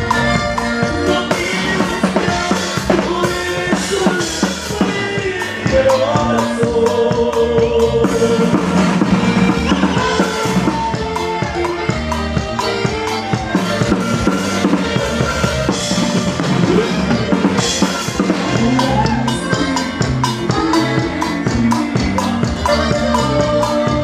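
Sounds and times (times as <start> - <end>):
drum kit beat: 0.0 - 24.0
live band playing: 0.0 - 24.0
melodic lead line: 0.0 - 24.0.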